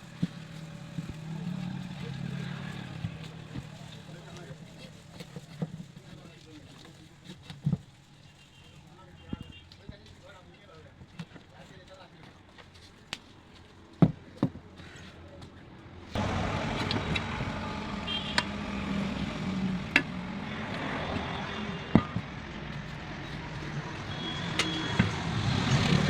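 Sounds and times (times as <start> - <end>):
vehicle engine rumble: 0.0 - 7.2, 16.0 - 26.0.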